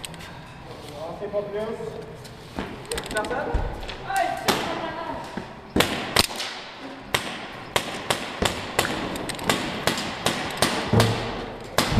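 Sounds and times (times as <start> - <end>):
airsoft pistols firing: 5.8 - 11.9.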